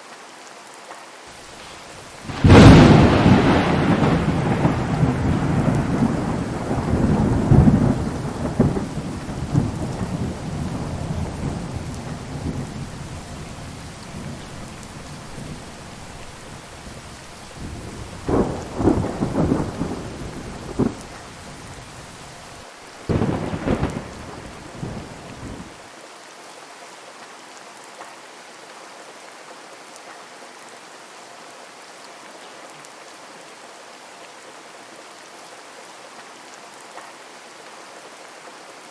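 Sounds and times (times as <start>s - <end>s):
heavy rain: 0.0s - 38.9s
thunder rumbling: 2.3s - 25.8s.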